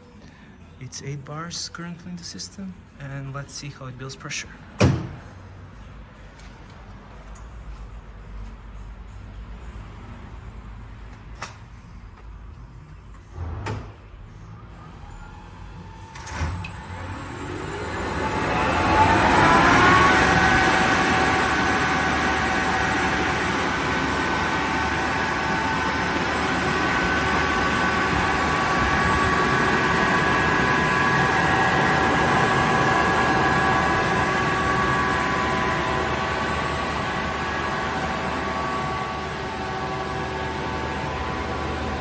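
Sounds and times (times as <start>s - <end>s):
air compressor whine: 13.2s - 42.0s.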